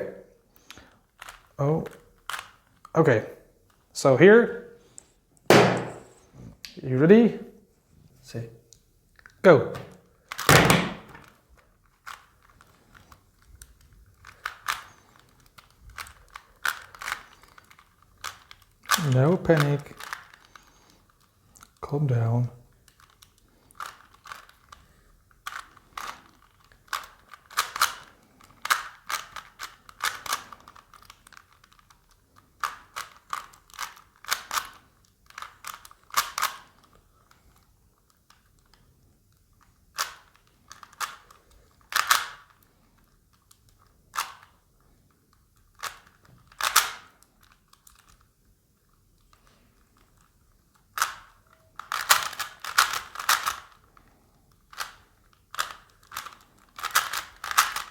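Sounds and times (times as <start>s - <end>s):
puzzle cube plastic clicks: 0.5s - 3.0s, 8.7s - 57.9s.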